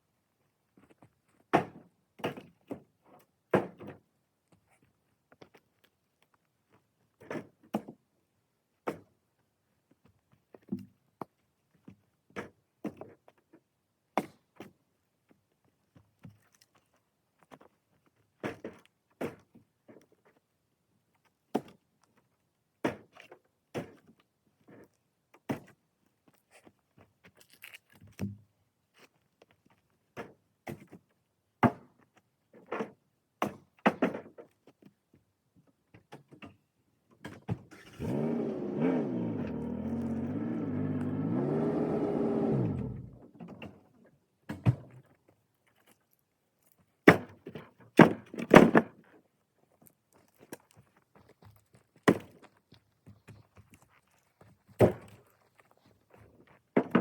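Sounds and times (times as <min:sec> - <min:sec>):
engine revving: 0:37.7 - 0:43.2.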